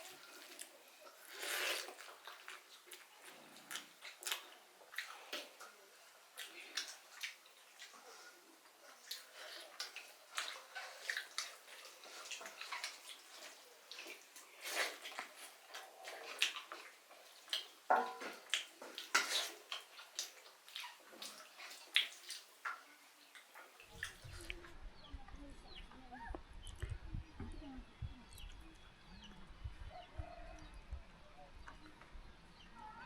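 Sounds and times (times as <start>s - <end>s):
water splashing and dripping: 16.3s - 24.4s.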